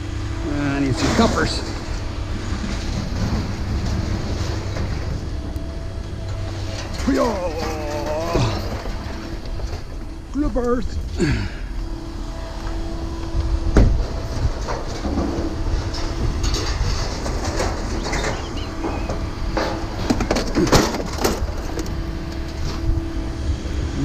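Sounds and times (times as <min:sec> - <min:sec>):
scrap metal clanking: 0:00.0 - 0:23.1
steady machine hum: 0:00.0 - 0:24.0.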